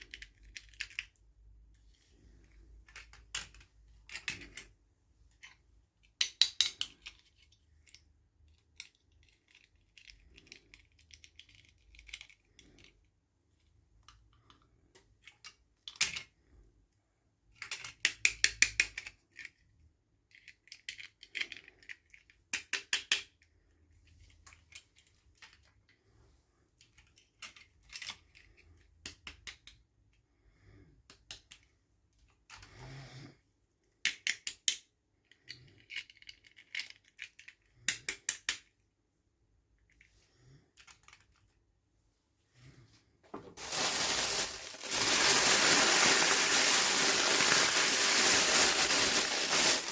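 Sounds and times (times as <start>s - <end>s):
plastic packaging clicking and crinkling: 43.5s - 49.9s.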